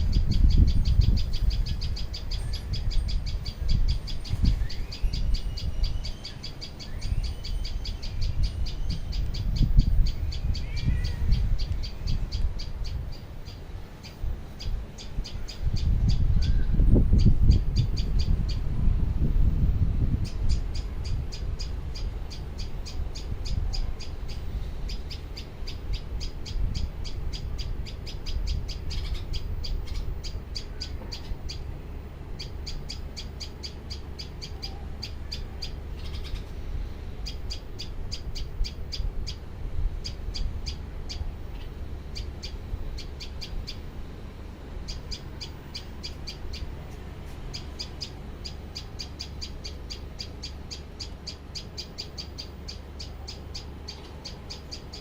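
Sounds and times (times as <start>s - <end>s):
birds chirping: 0.0s - 55.0s
steady low rumble: 0.0s - 55.0s.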